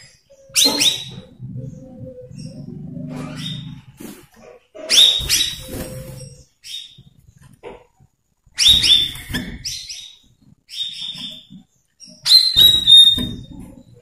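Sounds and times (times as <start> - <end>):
bird whistling song: 0.0 - 3.7, 8.6 - 13.6.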